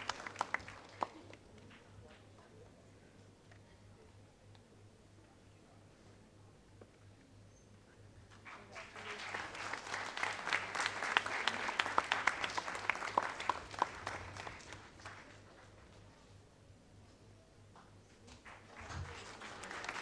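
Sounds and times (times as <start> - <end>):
audience applauding: 0.0 - 1.5, 8.3 - 16.3, 18.3 - 20.0.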